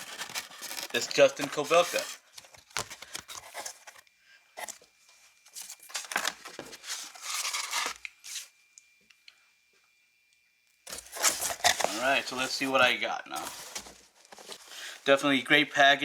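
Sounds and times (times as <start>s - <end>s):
packaging tearing and crinkling: 0.0s - 4.0s, 5.6s - 8.5s, 10.9s - 12.8s.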